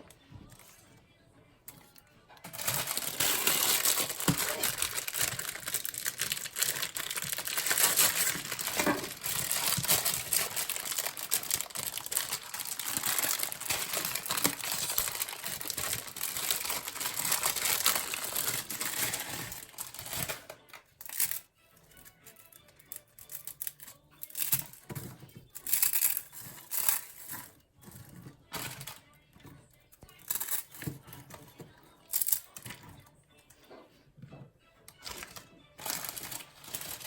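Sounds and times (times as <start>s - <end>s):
dry noodles crunching by hand: 2.5s - 20.1s.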